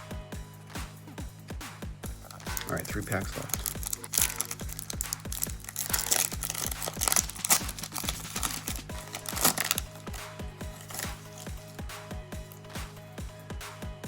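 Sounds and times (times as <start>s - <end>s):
background music with steady beat: 0.0s - 14.0s
foil wrapper crinkling and tearing: 2.3s - 11.6s.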